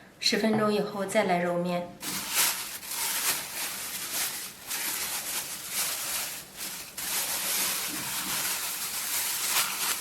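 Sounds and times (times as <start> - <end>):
hands kneading dough: 2.0 - 10.0.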